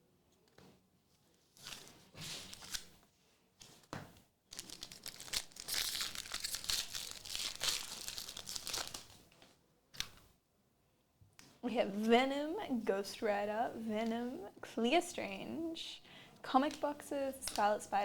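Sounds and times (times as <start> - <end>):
foil pack tearing: 4.5 - 9.2
wrapper crinkling: 4.5 - 9.3.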